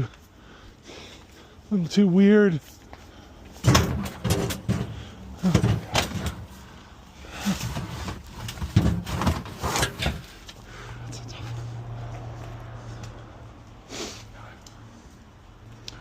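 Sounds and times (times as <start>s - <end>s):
scrap metal clanking: 3.6s - 6.6s, 7.3s - 10.4s.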